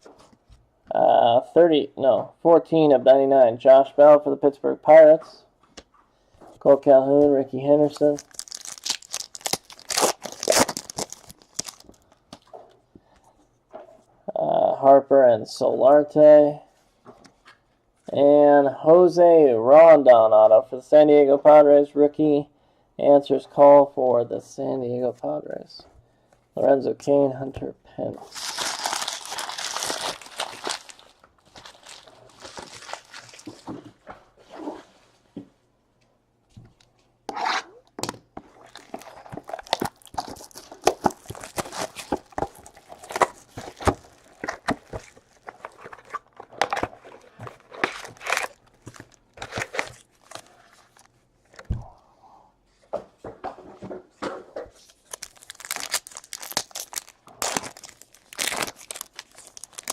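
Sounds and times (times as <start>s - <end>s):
cards rustling: 7.8s - 12.6s, 28.3s - 33.8s, 38.6s - 51.7s, 54.8s - 59.9s
card pack wrappers tearing: 7.9s - 12.2s, 28.2s - 33.6s, 38.6s - 51.1s, 54.8s - 59.9s.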